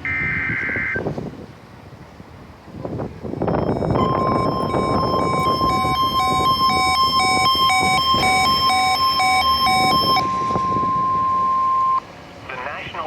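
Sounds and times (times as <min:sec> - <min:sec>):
high alert tone: 0:03.4 - 0:12.0
two-note alarm beeping: 0:03.4 - 0:12.0.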